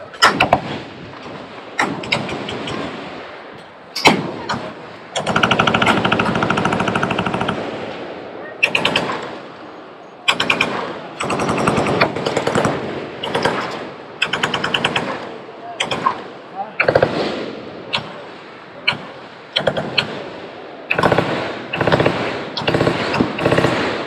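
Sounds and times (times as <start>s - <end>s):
rumbling echo: 0.0s - 24.0s
machine guns firing: 0.2s - 3.1s, 4.0s - 7.8s, 8.6s - 9.4s, 10.3s - 18.3s, 18.9s - 20.3s, 20.9s - 24.0s.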